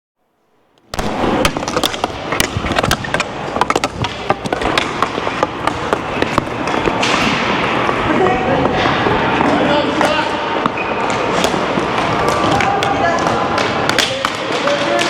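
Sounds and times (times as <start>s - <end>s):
sticks and ball clacking: 0.8s - 15.0s
feet scuffing and shuffling: 2.0s - 12.4s.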